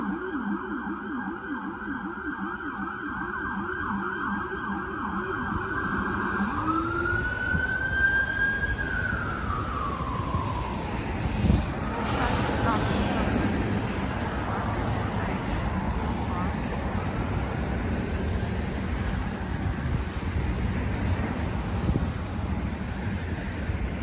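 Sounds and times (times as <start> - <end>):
emergency siren yelp and wail: 0.0 - 24.0
street traffic noise: 4.8 - 24.0.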